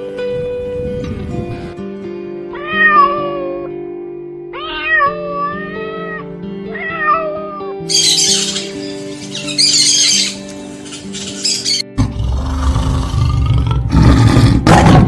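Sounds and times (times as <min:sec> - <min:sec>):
background music: 0:00.0 - 0:15.0
cat meowing: 0:02.5 - 0:03.7, 0:04.6 - 0:08.6.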